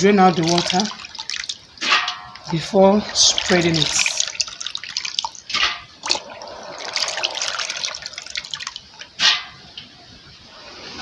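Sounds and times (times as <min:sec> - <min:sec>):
water draining and dripping: 0:00.0 - 0:09.9
beans and water poured into sieve: 0:00.3 - 0:01.5, 0:02.5 - 0:08.9.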